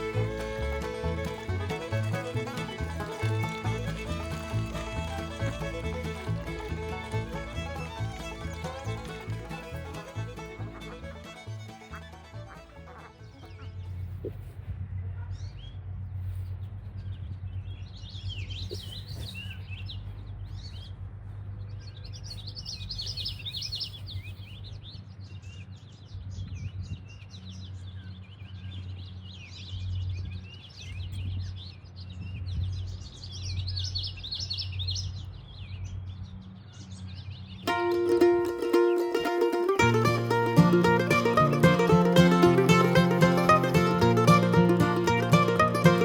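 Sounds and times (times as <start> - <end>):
many birds chirping: 16.4 - 39.2.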